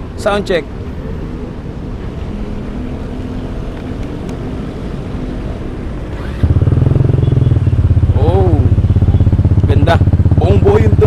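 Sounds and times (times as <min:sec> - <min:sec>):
scooter engine exhaust rumble: 0:06.1 - 0:11.0.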